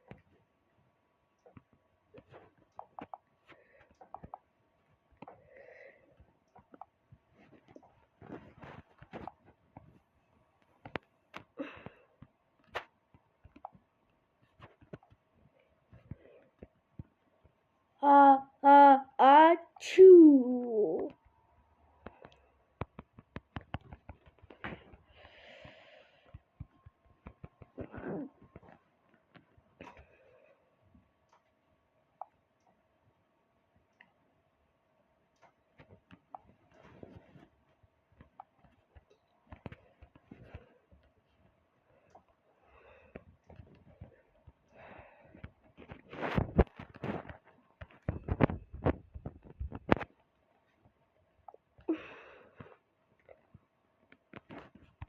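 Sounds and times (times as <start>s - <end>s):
soft breathy sound: 5.2s - 9.2s, 24.4s - 26.8s, 39.6s - 46.4s, 51.8s - 53.5s
faint small clicks and taps: 6.1s - 17.6s, 22.0s - 27.8s, 38.1s - 51.9s, 52.5s - 55.0s.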